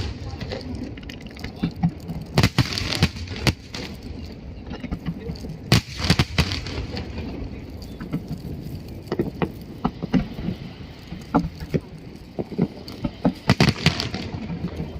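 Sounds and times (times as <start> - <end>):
fireworks bangs: 0.0 - 1.0, 1.6 - 8.3, 12.7 - 14.9
fireworks crackling: 0.0 - 14.9
small fireworks pops: 0.0 - 14.9.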